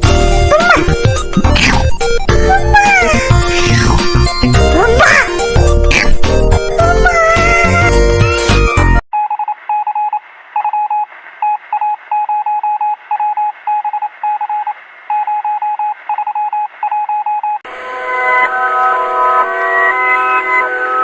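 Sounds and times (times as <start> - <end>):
loud chord-like alarm tone: 17.7 - 21.0.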